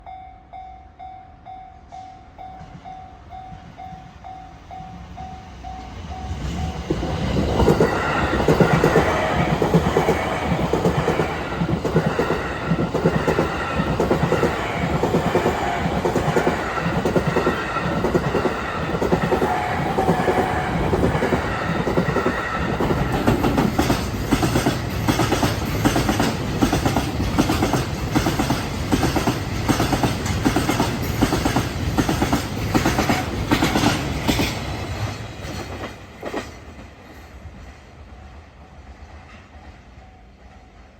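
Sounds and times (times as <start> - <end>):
level-crossing warning bell: 0.0 - 7.0
train wheels clattering over rail joints: 6.4 - 20.4, 21.0 - 37.2.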